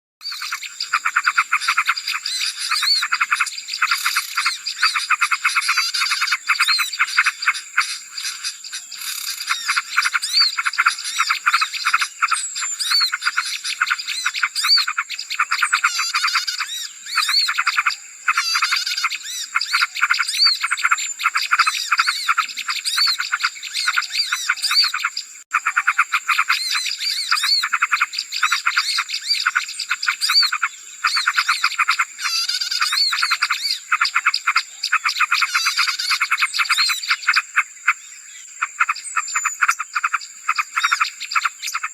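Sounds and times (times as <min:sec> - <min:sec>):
songbirds chirping: 0:00.2 - 0:41.9.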